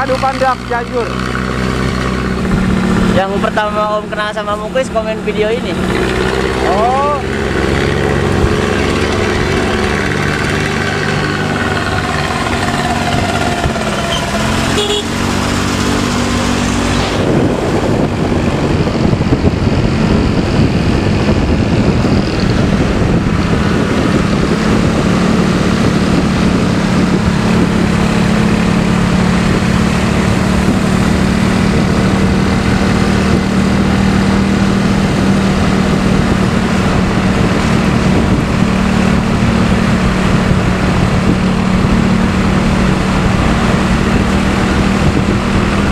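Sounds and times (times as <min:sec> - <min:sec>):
bus engine snoring exhaust: 0:05.8 - 0:45.9.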